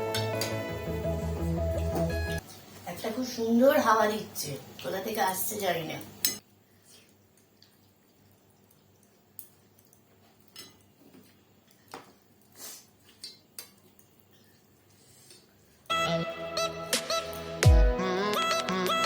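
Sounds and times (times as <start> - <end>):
dishes and cutlery clinking: 10.5 - 10.8.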